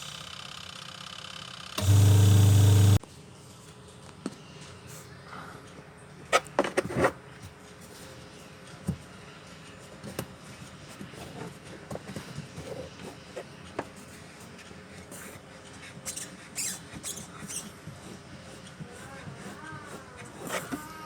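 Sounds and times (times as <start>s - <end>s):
washing machine motor hum: 1.8s - 3.0s.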